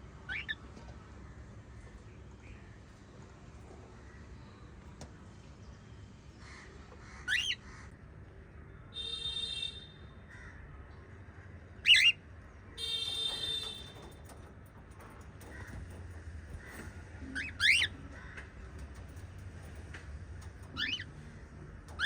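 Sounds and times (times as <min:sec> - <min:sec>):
parrots calling: 0:07.0 - 0:07.9, 0:11.8 - 0:12.2, 0:16.6 - 0:18.8, 0:20.6 - 0:22.0.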